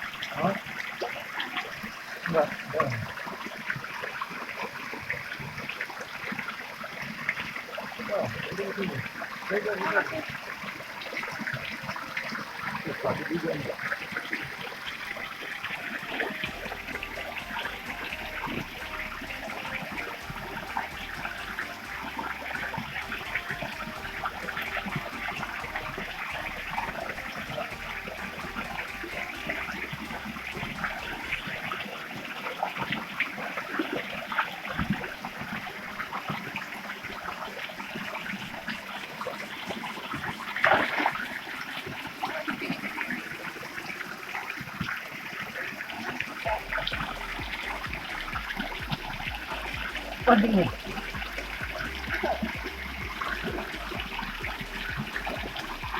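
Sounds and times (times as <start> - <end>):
stream water rushing and splashing: 0.0 - 55.9.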